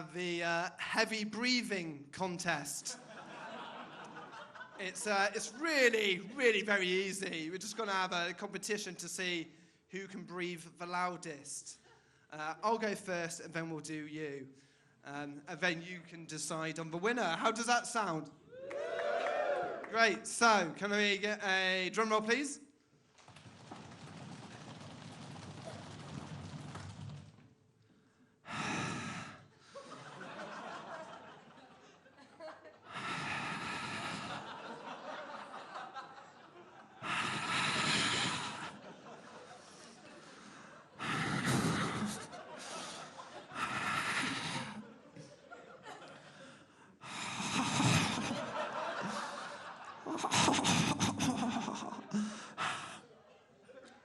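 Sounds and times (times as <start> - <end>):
audience laughing: 2.9 - 5.2, 29.6 - 44.0, 44.8 - 46.7, 47.4 - 52.4
drum roll: 23.2 - 27.4.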